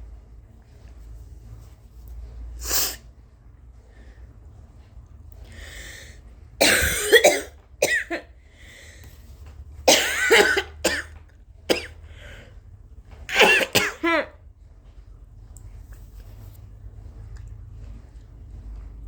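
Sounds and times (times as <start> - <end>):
woman breathing in: 5.5 - 6.2, 8.5 - 9.1, 12.0 - 12.6
woman coughing: 6.6 - 8.3, 9.9 - 11.1, 11.7 - 12.0, 13.3 - 14.4.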